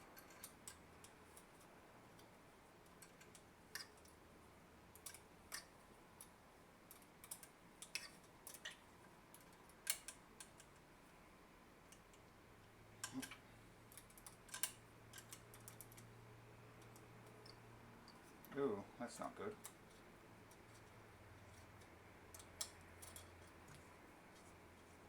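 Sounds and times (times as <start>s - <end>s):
metallic clicks of tools: 0.0s - 2.3s, 6.9s - 10.8s, 13.0s - 16.1s, 21.8s - 23.8s.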